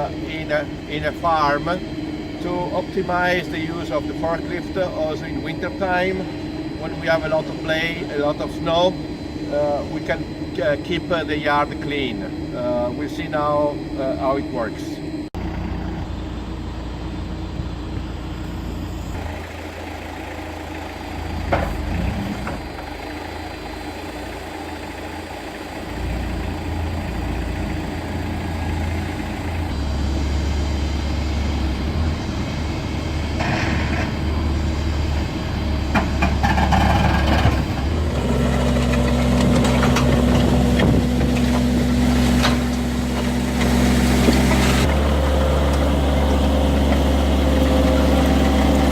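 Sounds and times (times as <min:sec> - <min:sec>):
forklift engine running: 0:00.0 - 0:48.9
knocks and clanks: 0:35.9 - 0:44.5.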